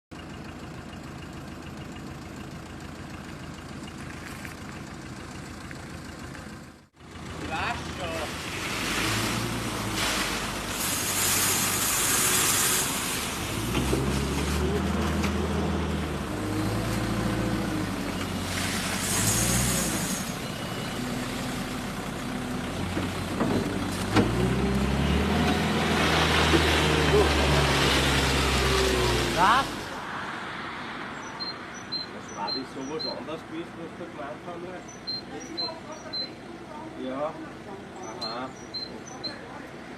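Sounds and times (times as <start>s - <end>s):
vehicle engine running: 0.1s - 30.0s, 31.7s - 39.9s
short hiss: 10.0s - 13.3s.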